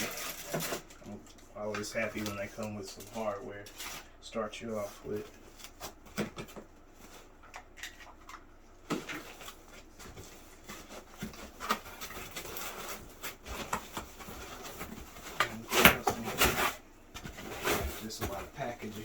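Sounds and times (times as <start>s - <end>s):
packaging rustling: 0.0s - 4.2s, 4.8s - 19.0s.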